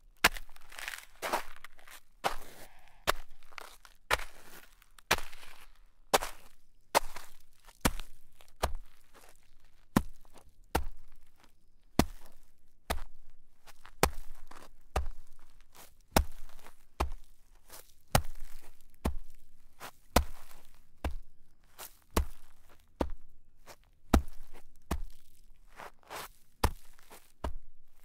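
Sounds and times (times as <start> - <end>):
footsteps crunching in snow: 0.2 - 10.4, 13.8 - 28.0.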